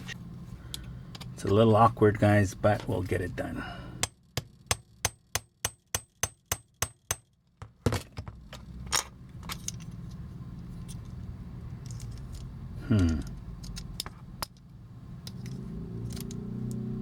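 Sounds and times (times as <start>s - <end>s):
hammer tapping metal punch: 4.0s - 7.8s.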